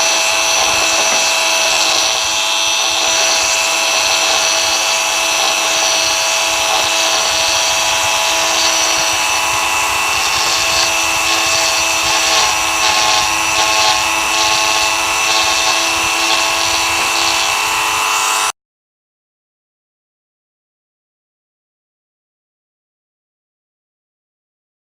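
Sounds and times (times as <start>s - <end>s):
rotary tool high whine: 0.0s - 18.6s.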